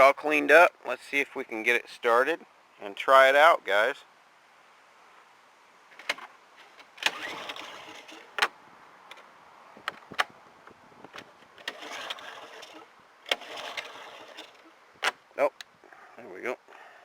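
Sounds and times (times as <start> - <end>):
recoil starter pulls: 6.9 - 8.5, 11.2 - 15.2.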